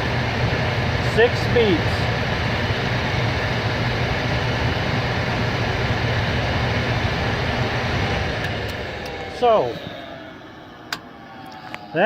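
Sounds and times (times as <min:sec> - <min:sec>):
blower motor humming: 0:00.0 - 0:12.0.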